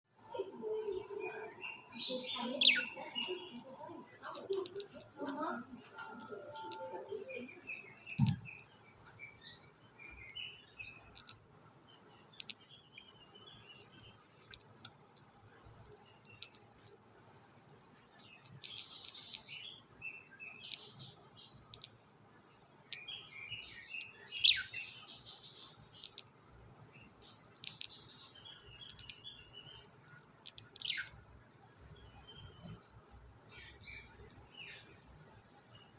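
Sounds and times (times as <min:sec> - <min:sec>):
seed eating clicks: 0:01.9 - 0:06.9, 0:09.4 - 0:17.1, 0:17.9 - 0:24.8, 0:25.6 - 0:26.4, 0:27.0 - 0:31.3.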